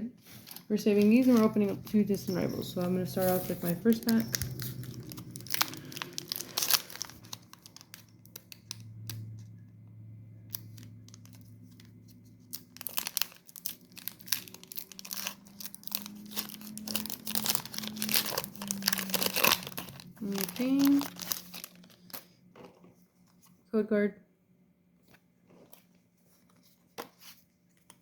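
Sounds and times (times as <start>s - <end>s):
foil wrapper crinkling and tearing: 3.3s - 9.4s, 10.5s - 22.4s.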